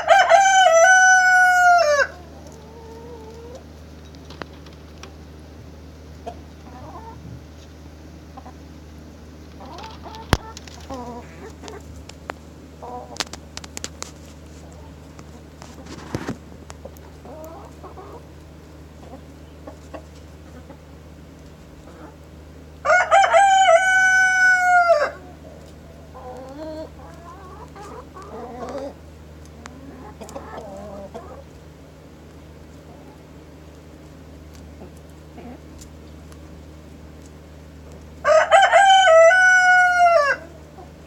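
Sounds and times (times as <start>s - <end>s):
rooster crowing: 0.0s - 2.3s, 22.8s - 25.3s, 38.2s - 40.6s
hens clucking softly: 0.0s - 22.4s, 23.0s - 41.0s
steady low hum: 0.0s - 41.0s.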